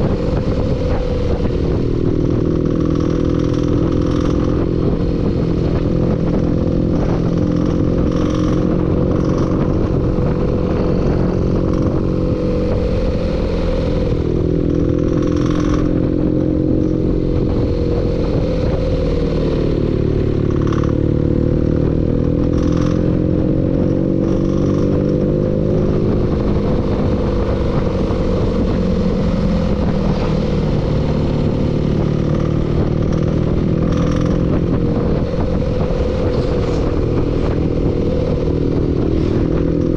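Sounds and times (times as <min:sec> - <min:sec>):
engine running with a knock: 0:00.0 - 0:39.9
sharp clatters: 0:02.4 - 0:12.0, 0:20.4 - 0:25.3.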